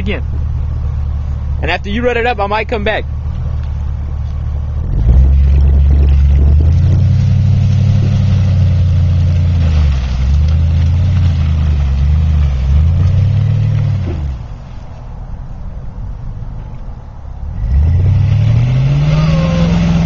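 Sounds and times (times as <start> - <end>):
truck engine revving hard: 4.8 - 14.5, 17.5 - 20.0.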